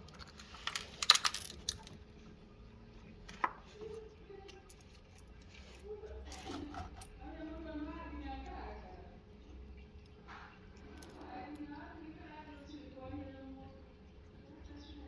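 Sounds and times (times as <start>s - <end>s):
metallic clatter with ring: 0.0s - 2.0s.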